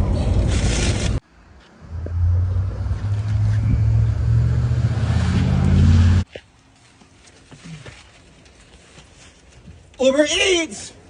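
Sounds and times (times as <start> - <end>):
road noise: 0.0 - 10.2
car engine humming: 1.7 - 6.3.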